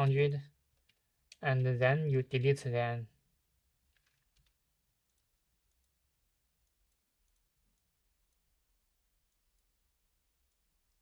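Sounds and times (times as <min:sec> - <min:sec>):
computer mouse clicks: 0:03.9 - 0:06.0, 0:06.6 - 0:08.5.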